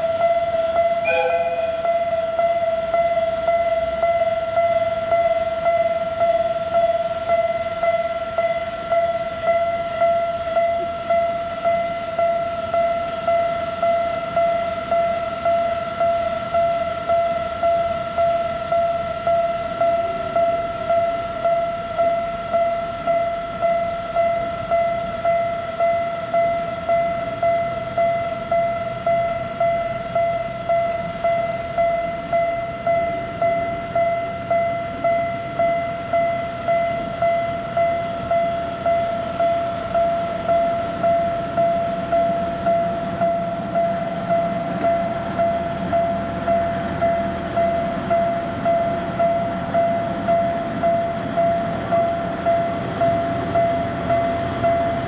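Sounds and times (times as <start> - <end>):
level crossing bell dinging: 0.9 - 2.6.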